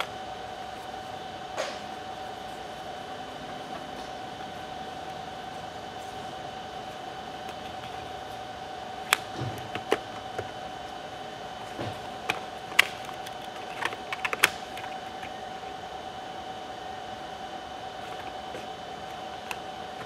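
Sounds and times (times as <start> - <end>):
steady background hum: 0.0 - 20.0
plastic and metal clicks: 12.2 - 15.3.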